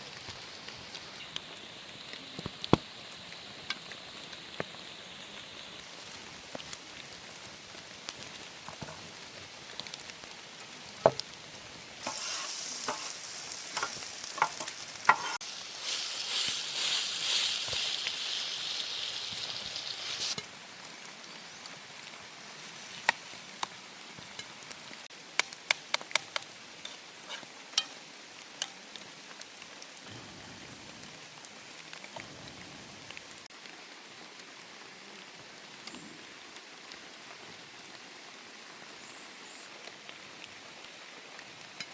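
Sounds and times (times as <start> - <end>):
food sizzling in a pan: 0.0 - 25.1, 26.7 - 29.7
rain pattering: 0.0 - 41.9.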